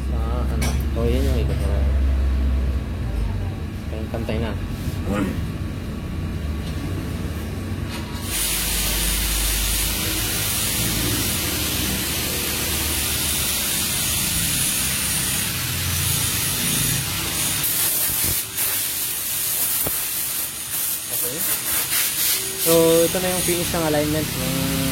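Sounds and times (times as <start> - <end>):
loud steady hiss: 8.2 - 24.9.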